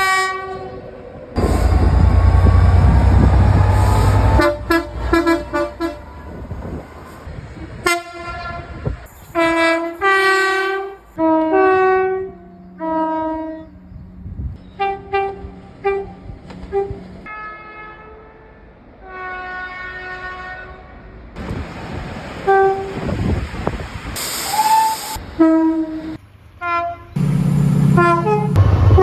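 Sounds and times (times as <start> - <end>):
low train rumble: 0.0 - 17.4, 18.2 - 29.0
two-note train horn blasts: 1.4 - 6.1.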